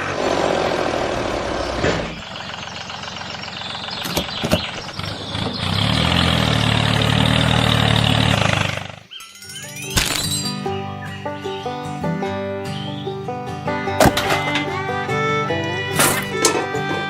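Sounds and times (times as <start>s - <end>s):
engine idling: 0.0s - 9.1s, 10.6s - 17.0s
sharp knocks: 14.0s - 17.0s.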